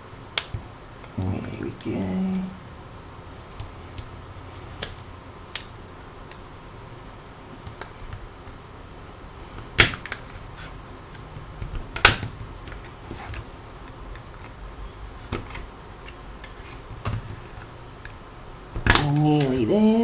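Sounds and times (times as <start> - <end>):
plastic clips clicking and snapping: 11.1 - 13.4, 18.8 - 19.6.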